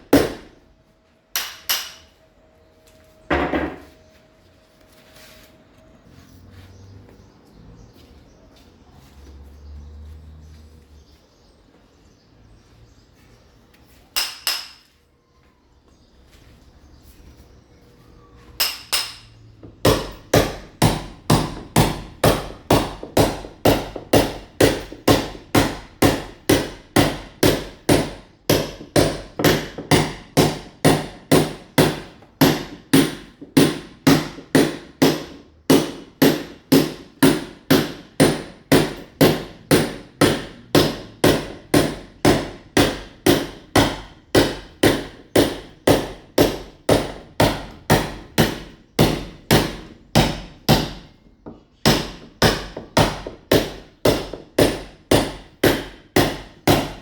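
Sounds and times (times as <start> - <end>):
hammer blows on masonry wall: 0.0 - 0.6, 18.5 - 57.0.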